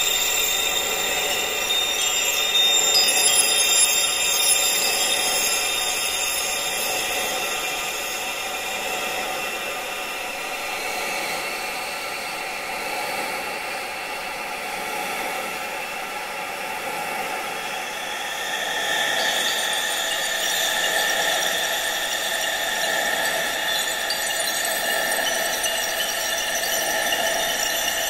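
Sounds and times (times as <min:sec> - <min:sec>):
high ringing tone: 0:00.0 - 0:11.6, 0:17.5 - 0:28.0.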